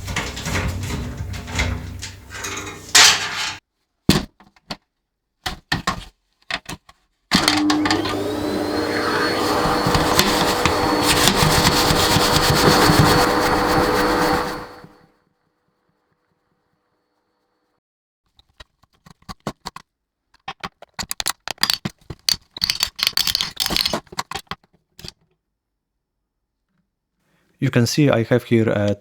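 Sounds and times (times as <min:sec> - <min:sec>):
electric dust blower whining: 0:07.3 - 0:15.0
handling clatter: 0:20.4 - 0:25.2.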